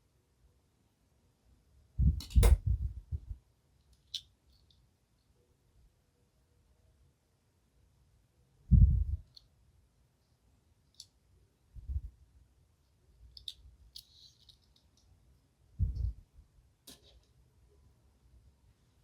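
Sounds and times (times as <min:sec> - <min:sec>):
plastic pieces clicking and tapping: 0:13.3 - 0:15.1.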